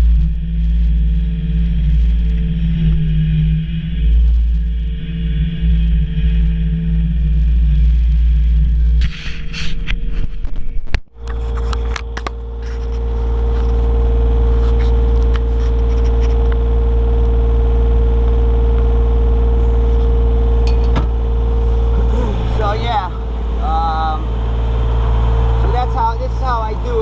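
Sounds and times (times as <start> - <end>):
excavator engine drone: 0.0 - 27.0
steady whine: 0.0 - 27.0
clanks and scrapes: 9.0 - 10.6, 11.2 - 13.9, 14.5 - 16.6.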